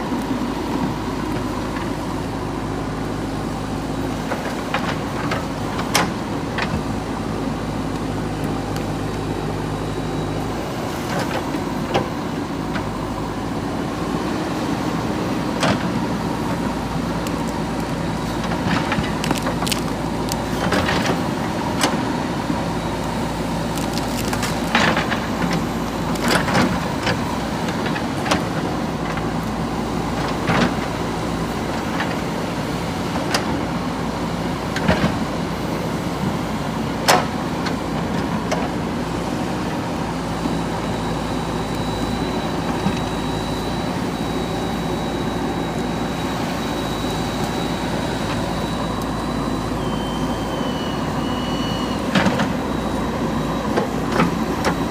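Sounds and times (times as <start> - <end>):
diesel engine running: 0.0 - 54.9
thin high whine: 40.4 - 54.9.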